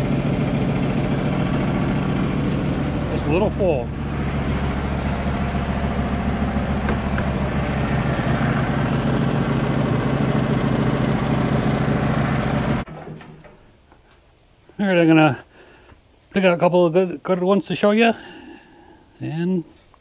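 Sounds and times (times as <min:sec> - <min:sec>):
engine running steadily: 0:00.0 - 0:12.9.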